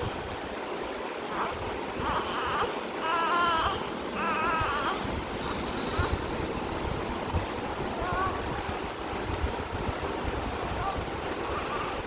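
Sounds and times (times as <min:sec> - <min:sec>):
newborn baby squeaking: 0:01.3 - 0:06.2
steady rushing noise: 0:02.8 - 0:12.0.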